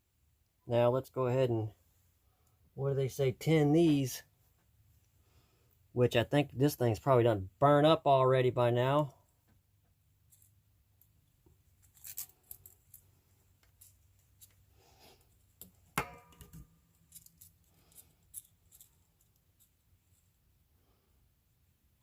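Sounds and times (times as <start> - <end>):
sharp metallic knock: 16.0 - 16.4.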